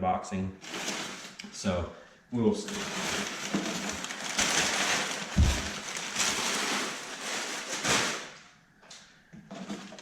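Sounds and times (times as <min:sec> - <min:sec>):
packaging rustling: 0:02.7 - 0:08.4
thump: 0:05.4 - 0:05.8.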